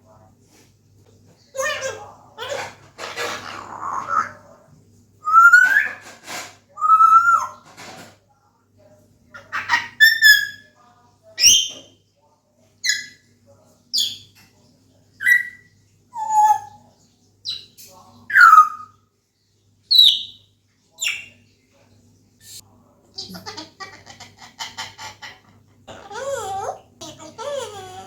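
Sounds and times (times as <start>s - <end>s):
parrot whistling and calling: 5.2s - 6.0s, 6.8s - 7.6s, 9.4s - 10.7s, 15.2s - 16.8s, 18.3s - 18.9s, 19.9s - 20.4s.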